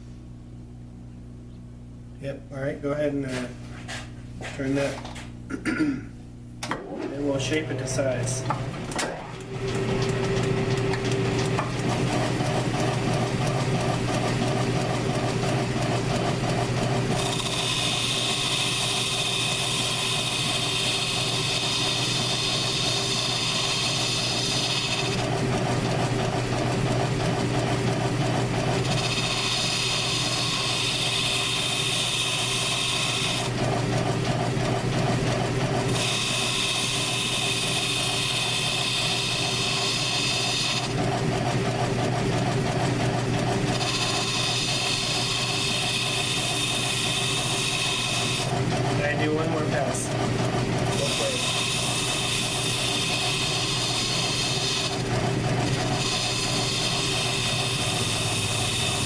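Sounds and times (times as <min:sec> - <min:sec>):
metal lathe humming: 0:06.7 - 0:59.0
cutting tool scraping hiss: 0:17.2 - 0:25.1, 0:28.9 - 0:33.4, 0:35.9 - 0:40.8, 0:43.8 - 0:48.4, 0:51.0 - 0:54.9, 0:55.9 - 0:59.0.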